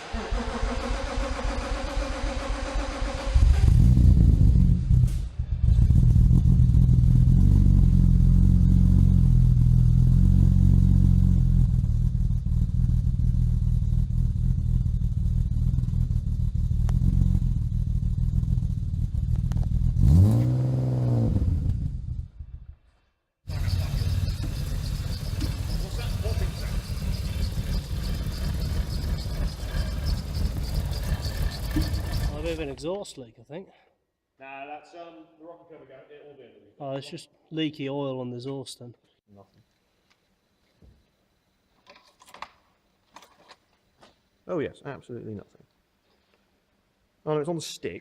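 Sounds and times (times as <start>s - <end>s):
car engine starter cranking: 0.0s - 3.9s, 23.5s - 32.7s
engine revving: 0.0s - 22.4s, 23.5s - 32.7s
car engine idling: 23.5s - 32.8s.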